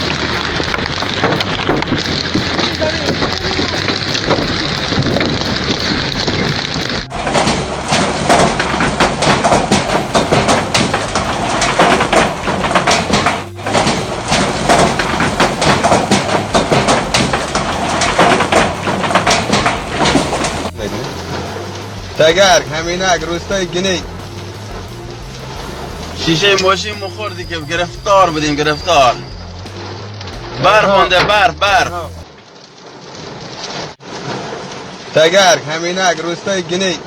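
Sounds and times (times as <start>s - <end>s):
hailstones clattering: 8.1s - 21.6s.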